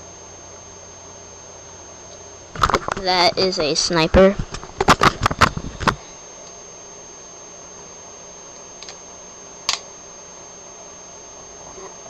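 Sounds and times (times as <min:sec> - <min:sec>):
steady background hiss: 0:00.0 - 0:04.8.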